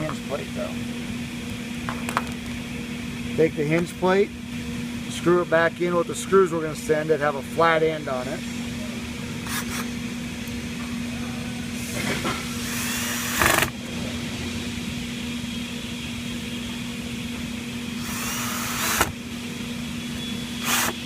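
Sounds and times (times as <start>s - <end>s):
steady low hum: 0.0s - 21.0s
power drill driving screws: 12.6s - 13.7s, 18.0s - 19.2s, 20.6s - 21.0s.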